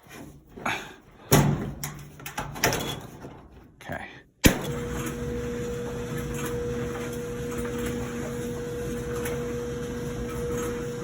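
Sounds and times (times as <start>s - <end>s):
clothes dryer motor hum: 4.5s - 11.0s.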